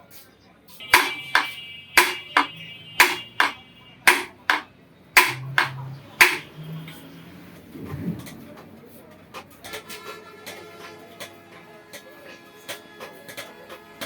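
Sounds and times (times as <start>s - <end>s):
hammer striking iron on anvil: 1.0s - 4.6s, 5.2s - 6.5s.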